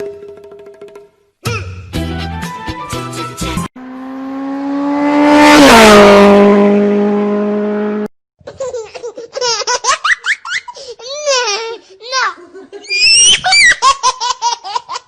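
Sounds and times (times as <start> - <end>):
motor vehicle passing by: 3.8 - 8.1
high squealing laughter: 12.6 - 15.0.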